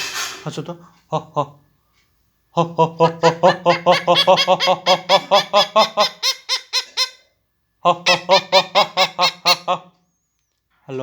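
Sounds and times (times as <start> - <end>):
parrot mimicking laughter: 2.8 - 7.2, 7.9 - 10.0.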